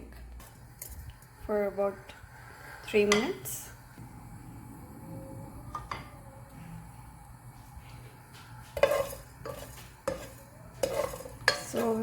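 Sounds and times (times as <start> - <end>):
spices stirring in a pan: 0.0 - 4.0, 7.3 - 12.0.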